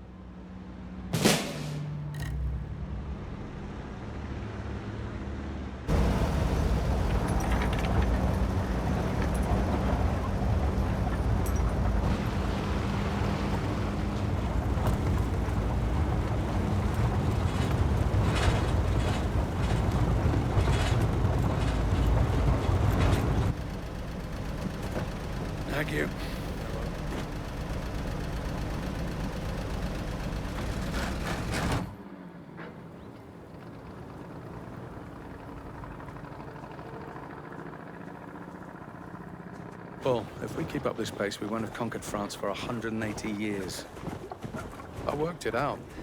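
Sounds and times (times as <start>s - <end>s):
sharp hit: 1.2s - 2.8s.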